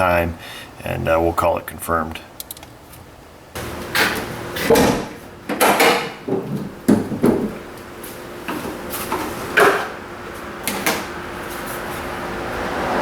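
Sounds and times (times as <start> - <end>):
hard parts clunking: 3.9 - 7.7.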